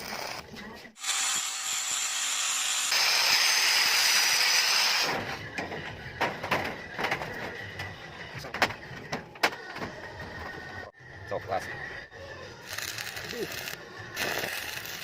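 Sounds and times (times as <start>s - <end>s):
grinder cutting steel: 0.0s - 5.2s, 12.6s - 15.0s.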